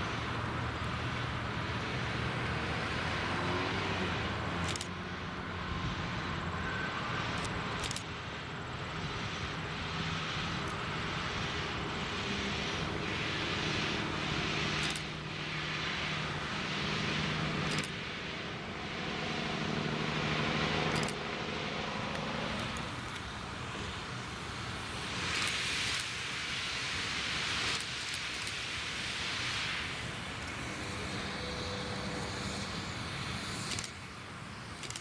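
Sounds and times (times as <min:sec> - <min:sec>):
diesel locomotive engine drone: 0:00.0 - 0:35.0
moving train hiss: 0:00.0 - 0:35.0.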